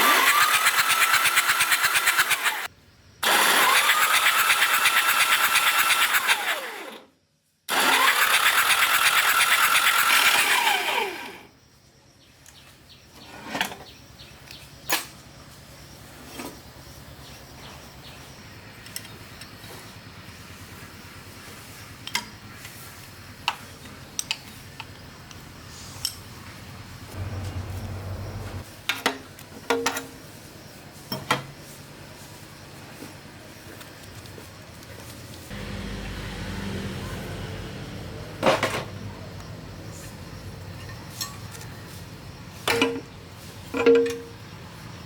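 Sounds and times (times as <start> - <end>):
metal tools clinking: 40.7 - 41.7.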